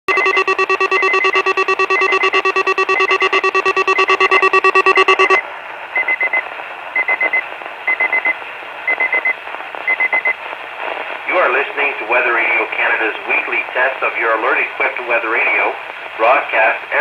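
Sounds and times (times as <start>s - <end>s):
pulsing buzzer tone: 0.1s - 5.4s
short high beeps: 0.1s - 5.4s.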